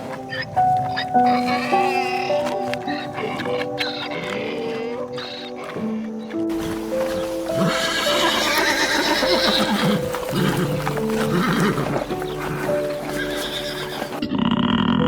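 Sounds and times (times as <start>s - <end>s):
background music with held notes: 0.0s - 15.0s
horse whinnying: 6.5s - 14.4s.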